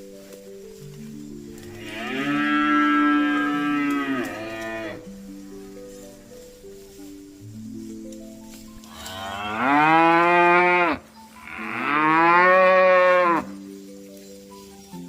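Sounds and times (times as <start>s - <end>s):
quiet stepped melody: 0.0s - 15.0s
cow mooing: 1.7s - 5.0s, 9.0s - 13.5s.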